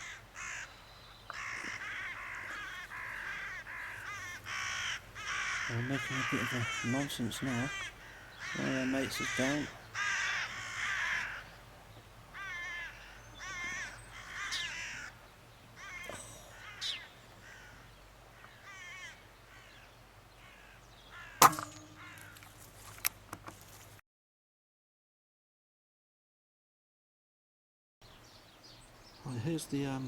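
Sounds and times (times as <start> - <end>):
crows cawing: 0.0 - 22.6
sharp crack: 21.4 - 23.2.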